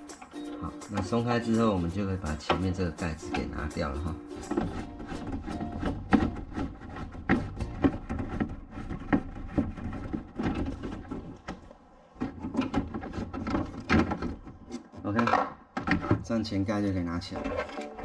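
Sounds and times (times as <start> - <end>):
plastic clicks and knocks: 4.5 - 16.3.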